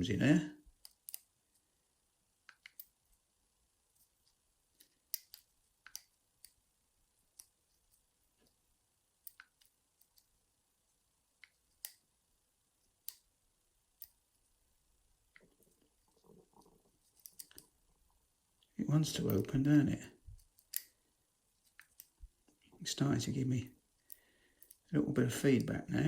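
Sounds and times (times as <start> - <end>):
lock pick clicks: 2.5 - 2.9, 4.8 - 6.6, 20.6 - 21.0.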